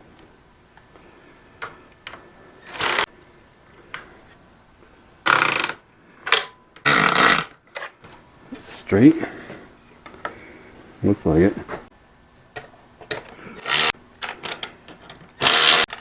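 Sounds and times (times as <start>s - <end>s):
power driver running: 2.6s - 3.1s, 5.2s - 5.8s, 13.6s - 14.7s, 15.4s - 16.0s.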